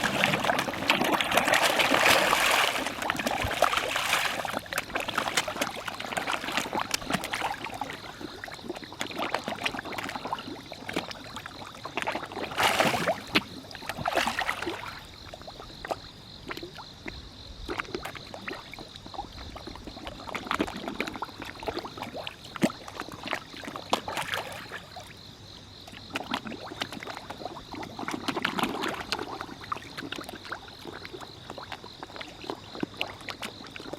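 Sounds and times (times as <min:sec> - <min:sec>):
koi splashing at water surface: 0:00.0 - 0:15.1.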